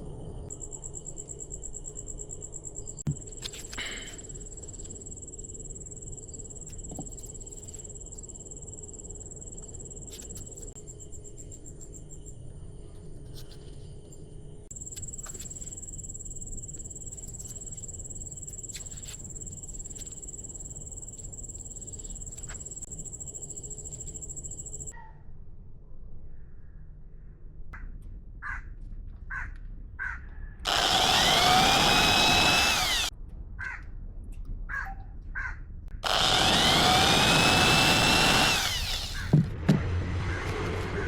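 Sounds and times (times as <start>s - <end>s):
insects trilling: 0.3s - 12.4s, 14.7s - 24.9s, 30.7s - 33.1s, 36.0s - 39.3s.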